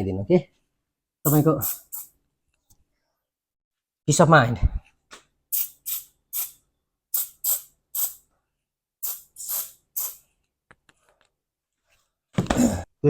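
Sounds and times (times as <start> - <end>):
aerosol spray bursts: 1.3 - 2.1, 5.5 - 8.2, 9.0 - 10.2.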